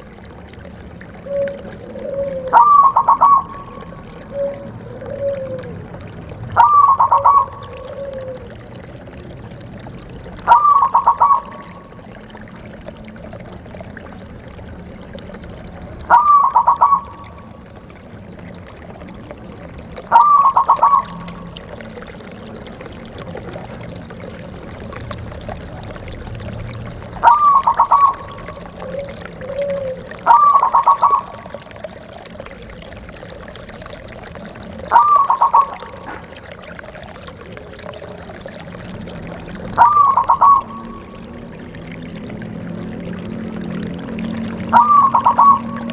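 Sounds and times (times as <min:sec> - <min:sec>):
dove cooing: 0:01.2 - 0:08.6, 0:10.4 - 0:11.9, 0:16.0 - 0:17.8, 0:20.0 - 0:21.9, 0:27.1 - 0:32.2, 0:34.8 - 0:36.6, 0:39.7 - 0:41.2, 0:44.7 - 0:45.9.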